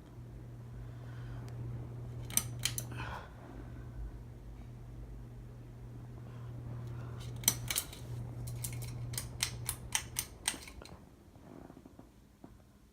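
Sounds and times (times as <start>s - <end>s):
ceiling fan motor humming: 0.0s - 12.9s
sharp clicks and ticks: 8.8s - 10.8s.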